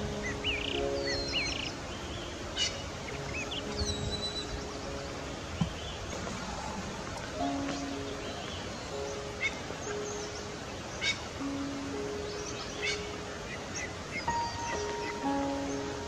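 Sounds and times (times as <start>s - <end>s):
soft background music: 0.0s - 16.0s
steady hiss: 0.0s - 16.0s
small birds chirping and whistling: 0.1s - 6.2s.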